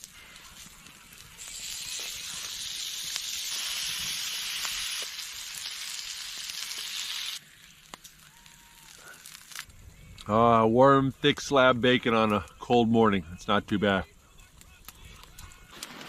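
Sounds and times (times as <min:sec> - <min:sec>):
bacon sizzling in a frying pan: 0:00.0 - 0:09.7.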